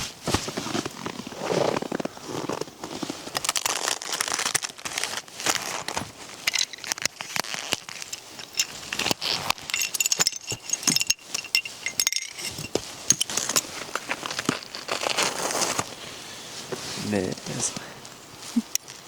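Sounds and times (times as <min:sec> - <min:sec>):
ice clinking together: 0:08.0 - 0:13.7.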